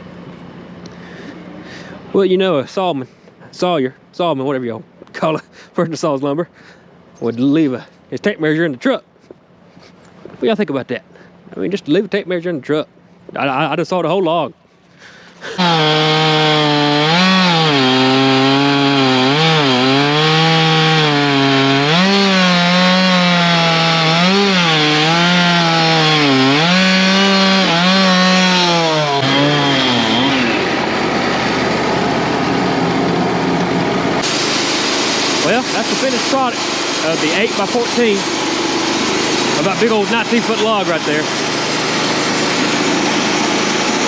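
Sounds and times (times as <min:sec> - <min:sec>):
band sawmill cutting log: 0:15.3 - 0:44.0
rushing hissing noise: 0:34.2 - 0:36.1.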